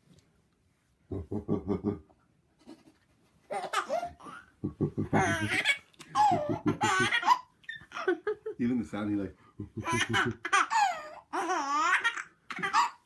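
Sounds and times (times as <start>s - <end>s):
baby laughing: 2.6s - 8.4s, 9.7s - 13.0s
man making monkey sounds: 4.6s - 7.4s, 9.6s - 10.6s.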